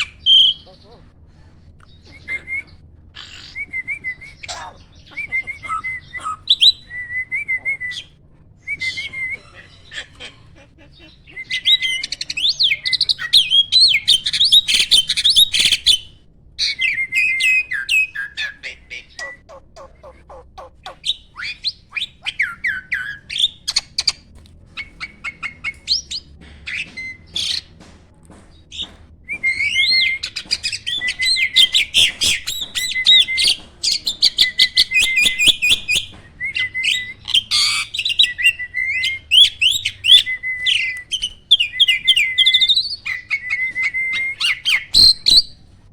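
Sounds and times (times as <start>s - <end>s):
starling chattering whistles: 1.9s - 10.2s, 11.2s - 20.1s, 29.3s - 45.5s.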